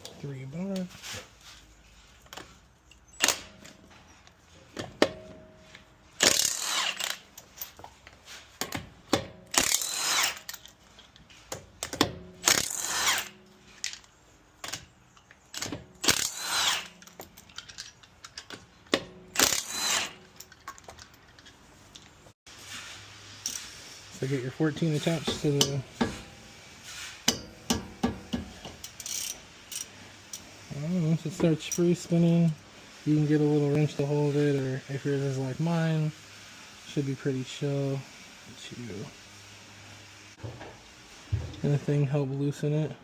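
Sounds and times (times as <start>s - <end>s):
tools clicking and knocking: 2.2s - 22.2s, 27.2s - 30.4s
power tool bursts: 6.2s - 7.3s, 9.5s - 10.5s, 12.4s - 13.4s, 15.6s - 17.0s, 19.3s - 20.2s.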